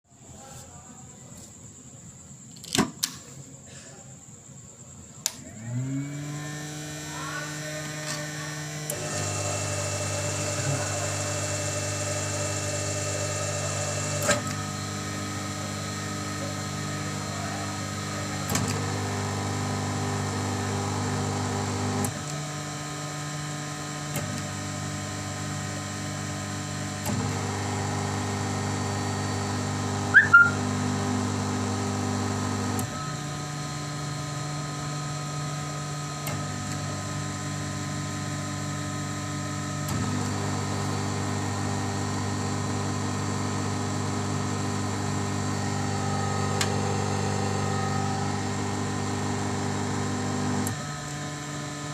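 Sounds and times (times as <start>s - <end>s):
electric motor humming: 5.4s - 51.9s
sharp high chirp: 30.1s - 30.6s.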